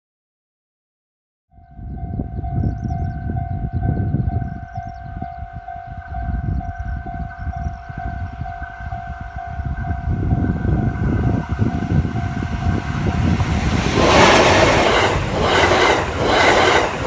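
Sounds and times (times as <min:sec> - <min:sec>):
loud uneven low rumble: 0:10.2 - 0:17.0.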